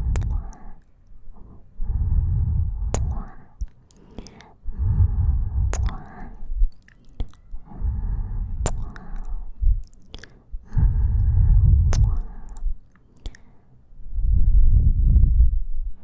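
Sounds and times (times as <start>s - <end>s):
breathing into microphone: 0.0s - 6.6s, 7.5s - 14.4s
wet kisses and lip smacks: 0.2s - 0.6s, 5.7s - 7.5s, 8.6s - 9.2s, 9.8s - 10.4s, 11.9s - 13.4s.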